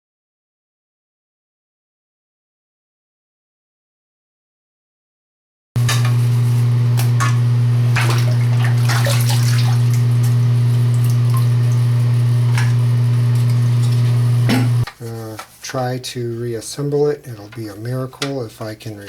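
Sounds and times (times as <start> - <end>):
water splashing: 5.8 - 14.9
appliance low hum: 5.8 - 15.4.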